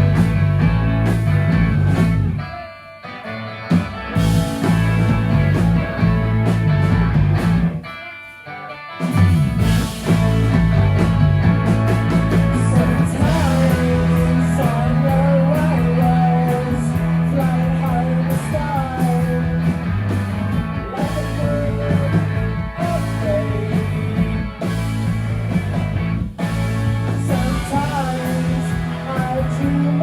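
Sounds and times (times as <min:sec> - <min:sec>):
bass and guitar chords: 0:00.0 - 0:30.0
person singing: 0:12.3 - 0:19.9, 0:20.8 - 0:24.2, 0:27.1 - 0:30.0.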